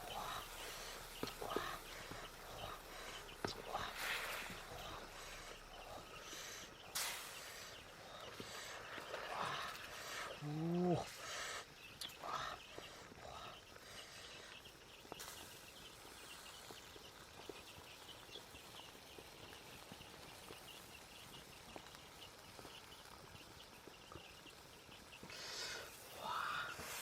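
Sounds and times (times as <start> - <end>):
faint outdoor background: 0.0 - 27.0.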